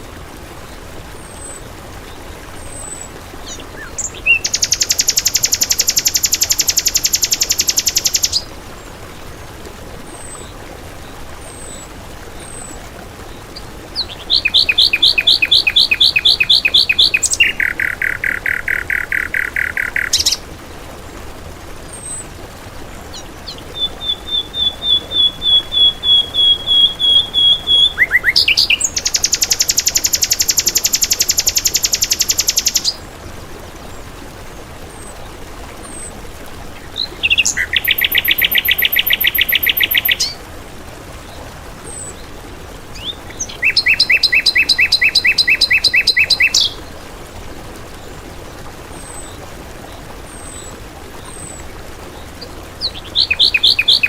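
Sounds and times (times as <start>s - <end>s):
songbird trilling: 14.0s - 20.4s, 23.8s - 33.0s, 37.1s - 40.4s, 43.0s - 46.8s, 52.8s - 54.0s.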